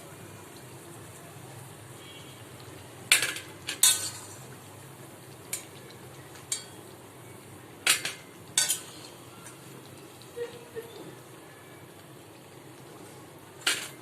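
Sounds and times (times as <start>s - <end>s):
utensils clinking against cookware: 3.1s - 4.4s, 6.5s - 6.8s, 7.8s - 9.6s, 13.6s - 14.0s.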